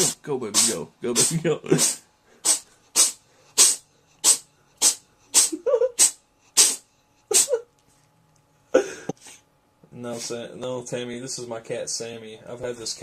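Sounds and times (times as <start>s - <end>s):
cat sneezing: 0.0s - 7.7s.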